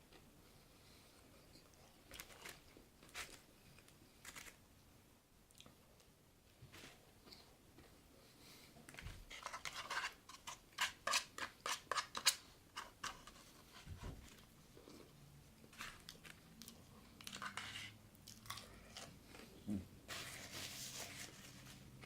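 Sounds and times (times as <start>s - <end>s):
crunchy chewing of fried chicken: 18.2s - 19.6s.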